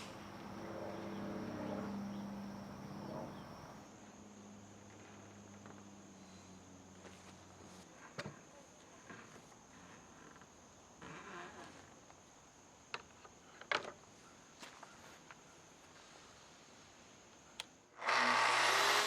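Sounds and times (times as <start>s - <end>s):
steady high-pitched whine: 0.0s - 7.8s.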